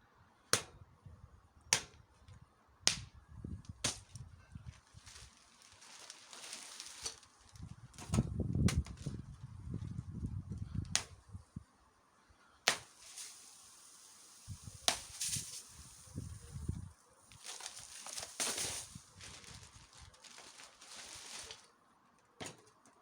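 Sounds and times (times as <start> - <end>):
rustling handling noise: 3.4 - 10.8, 14.4 - 23.0.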